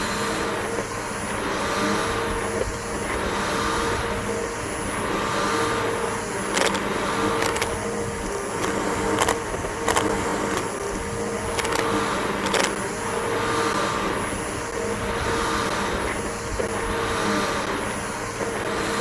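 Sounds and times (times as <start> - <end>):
sharp clicks: 6.5 - 12.9.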